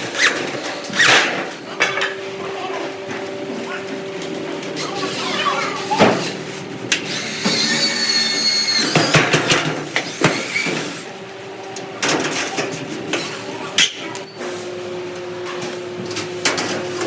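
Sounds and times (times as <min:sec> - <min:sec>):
steady machine hum: 0:00.0 - 0:17.0
high squeal: 0:07.4 - 0:09.1.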